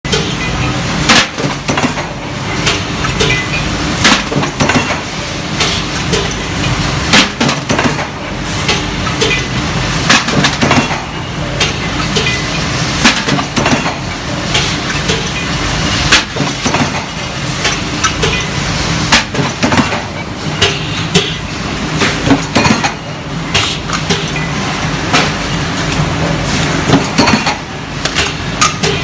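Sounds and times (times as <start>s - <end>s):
machine clicks and rattles: 0.1s - 18.6s, 19.2s - 21.4s
press machine clack: 0.1s - 29.0s.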